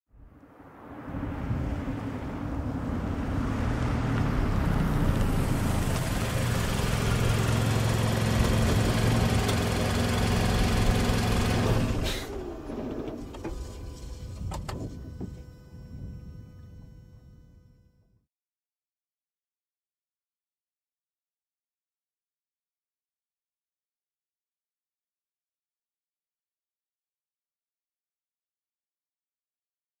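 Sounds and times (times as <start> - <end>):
car engine idling: 4.4 - 17.8.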